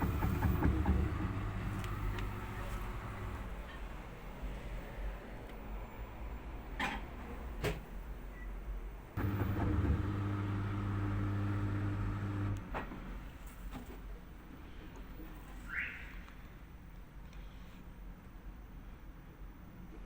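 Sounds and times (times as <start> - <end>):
appliance clicks: 0.0 - 3.5, 9.2 - 12.7
knocking in motor: 0.0 - 3.6, 9.2 - 12.9
appliance motor humming: 0.0 - 3.7, 9.2 - 12.7.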